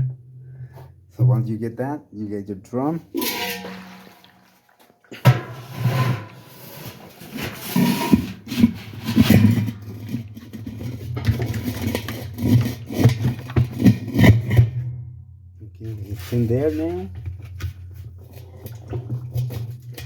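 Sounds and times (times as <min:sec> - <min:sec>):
washer drum scraping and knocking: 0:03.1 - 0:14.9, 0:16.2 - 0:20.0.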